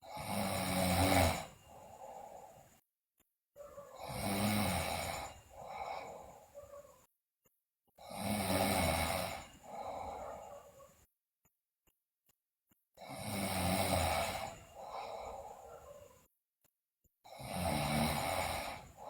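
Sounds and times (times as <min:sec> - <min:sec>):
girl snoring: 0:00.0 - 0:02.7, 0:03.6 - 0:07.0, 0:08.0 - 0:10.9, 0:13.0 - 0:16.3, 0:17.3 - 0:19.0
quiet breath out: 0:00.0 - 0:02.8, 0:04.7 - 0:07.1, 0:08.0 - 0:11.1, 0:14.0 - 0:16.3.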